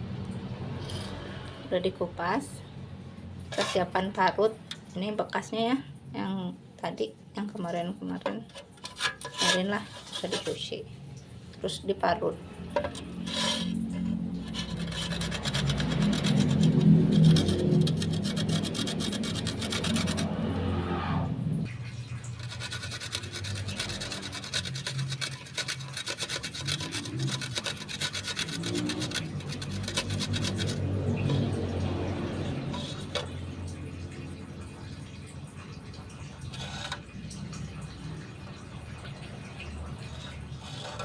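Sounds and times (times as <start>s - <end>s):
low background hum: 0.0s - 25.1s
root rasping on grater: 3.5s - 4.0s, 8.5s - 10.7s, 12.8s - 20.7s, 22.4s - 33.8s, 36.4s - 37.1s, 40.1s - 41.0s.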